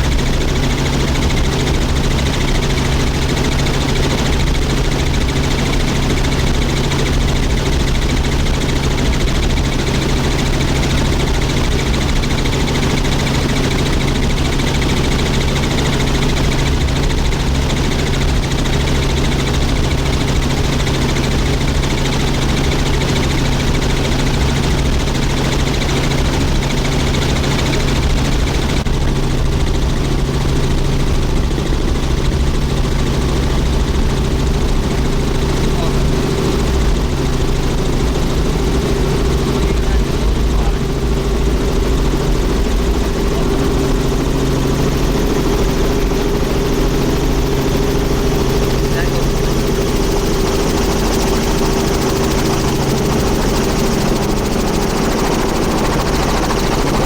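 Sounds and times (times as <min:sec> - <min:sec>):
helicopter engine and rotor drone: 0:00.0 - 0:57.0
low rotor beat: 0:31.4 - 0:57.0.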